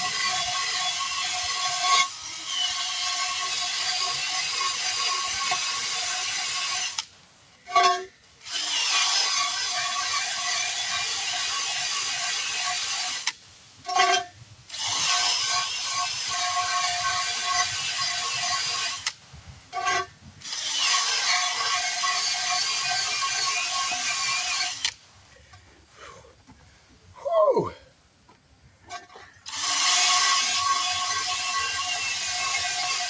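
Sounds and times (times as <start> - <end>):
power tool running: 29.5 - 33.0.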